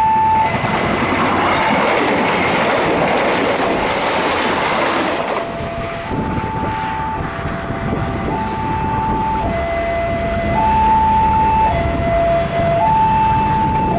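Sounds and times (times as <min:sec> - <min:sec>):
two-tone crossing alarm: 0:00.0 - 0:01.5, 0:05.2 - 0:13.9
train rail noise: 0:00.0 - 0:13.9.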